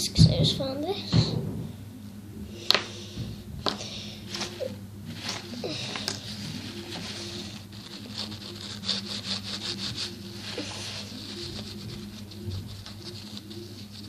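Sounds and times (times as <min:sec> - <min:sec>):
low steady hum: 0:00.0 - 0:14.0
paintbrush scratchy strokes: 0:04.3 - 0:14.0.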